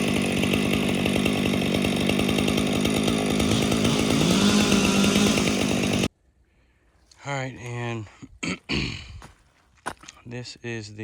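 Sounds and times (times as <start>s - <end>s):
chainsaw cutting and revving: 0.0s - 6.1s.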